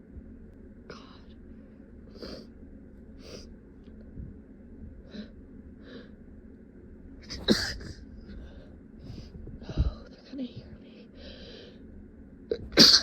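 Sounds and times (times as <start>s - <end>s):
stifled sneeze: 7.3s - 8.0s, 12.6s - 13.0s.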